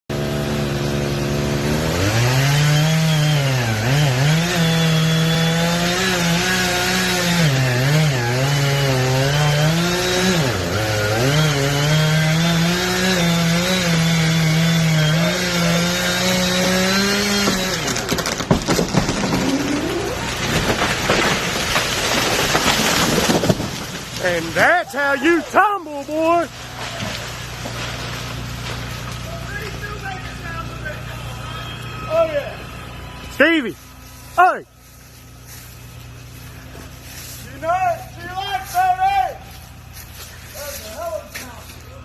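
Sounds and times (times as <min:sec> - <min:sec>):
chainsaw cutting a tree: 0:00.1 - 0:42.0
wood cracking: 0:00.6 - 0:30.4.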